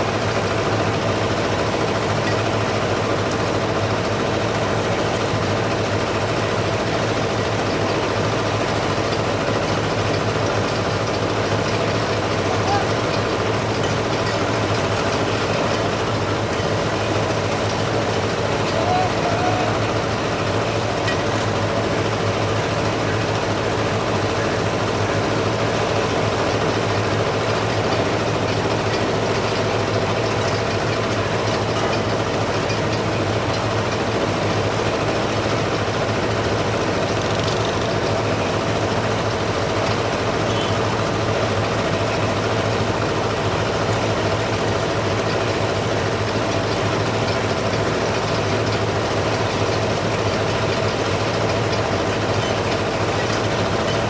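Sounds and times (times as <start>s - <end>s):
large engine drone: 0.0s - 54.0s.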